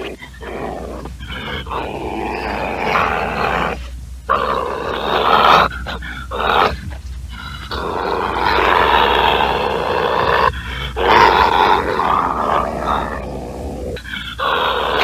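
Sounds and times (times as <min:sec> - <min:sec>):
badger growling: 0:00.0 - 0:15.0.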